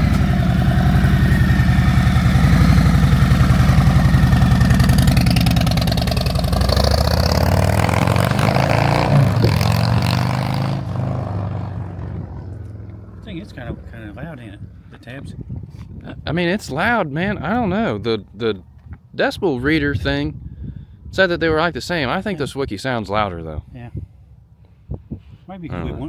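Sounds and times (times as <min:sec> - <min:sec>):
motorcycle riding past loudly: 0:00.0 - 0:15.0.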